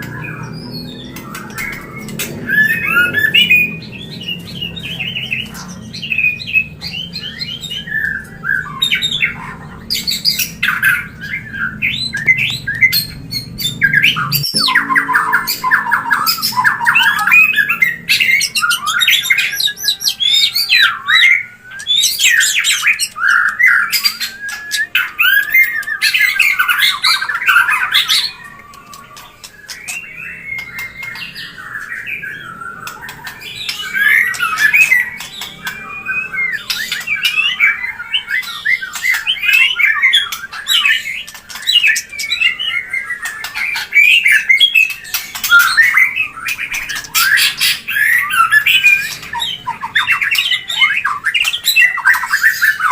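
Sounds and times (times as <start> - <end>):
bird squawking and singing: 0.0 - 52.9
low hum: 12.6 - 18.1.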